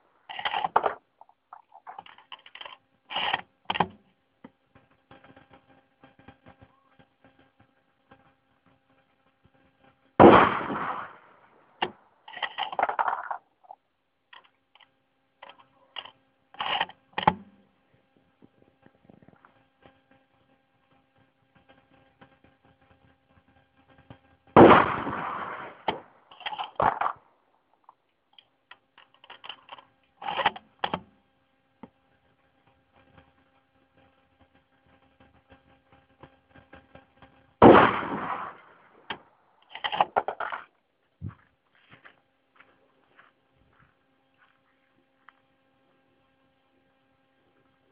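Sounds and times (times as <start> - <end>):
faint steady hum: 0.0 - 47.9
rifle shots with echo: 10.2 - 12.0, 24.6 - 27.2, 37.6 - 39.3.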